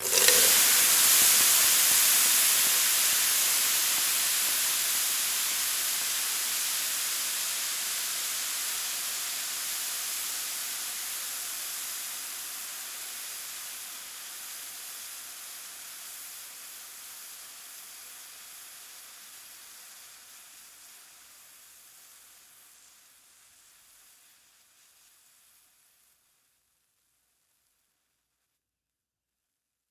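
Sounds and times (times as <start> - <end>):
water splash: 0.0 - 1.2
steam hissing on hot grill: 0.0 - 24.8.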